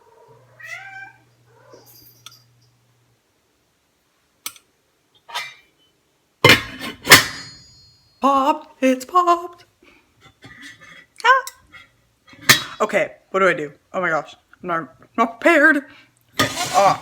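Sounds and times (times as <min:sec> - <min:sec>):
cat meowing: 0:00.0 - 0:01.9.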